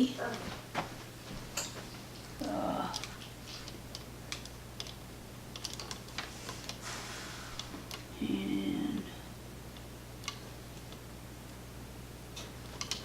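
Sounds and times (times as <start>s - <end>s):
voice murmur: 2.4s - 3.1s, 8.2s - 9.2s.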